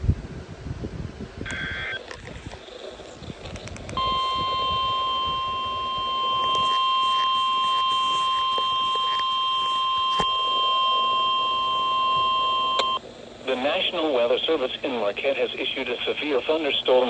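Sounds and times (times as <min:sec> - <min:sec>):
radio hiss: 0:01.5 - 0:17.0
long steady alarm beep: 0:04.0 - 0:13.0.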